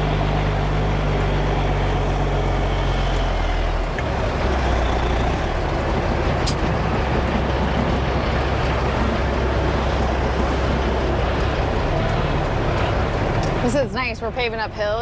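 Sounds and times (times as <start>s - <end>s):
diesel truck engine droning: 0.0s - 15.0s.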